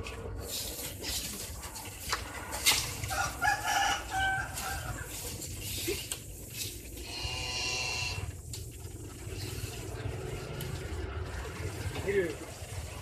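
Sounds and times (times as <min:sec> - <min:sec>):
farm animal call: 0:07.0 - 0:08.4.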